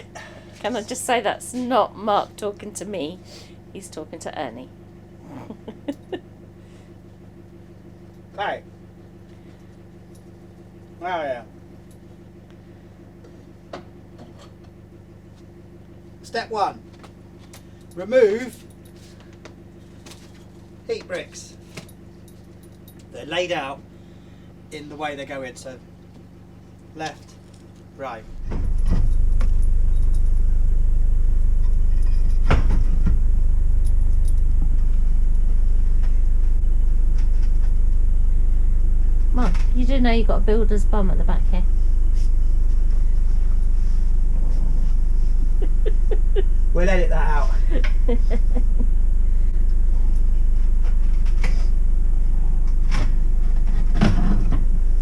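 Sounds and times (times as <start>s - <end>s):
motor humming: 26.1s - 55.0s.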